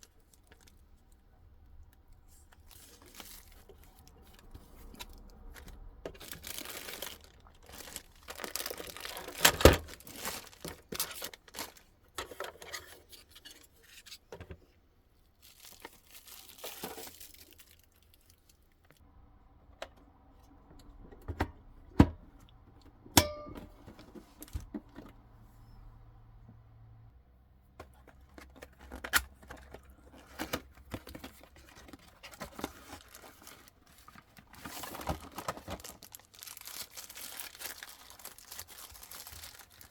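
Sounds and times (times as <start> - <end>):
packaging rustling and crinkling: 2.2 - 14.0, 15.4 - 19.0, 27.9 - 39.9.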